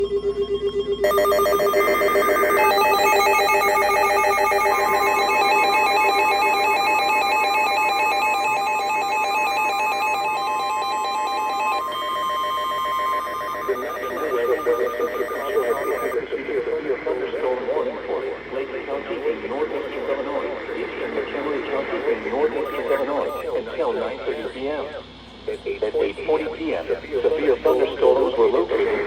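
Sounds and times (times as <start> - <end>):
pulsing emergency alert tones: 0.0 - 16.2, 22.6 - 23.6.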